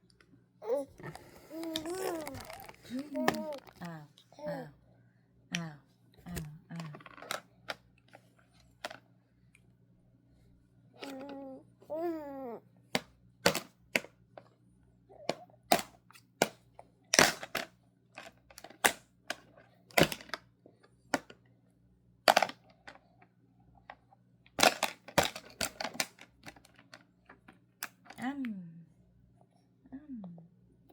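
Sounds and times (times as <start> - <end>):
person speaking: 0.6 - 4.8, 5.5 - 7.2.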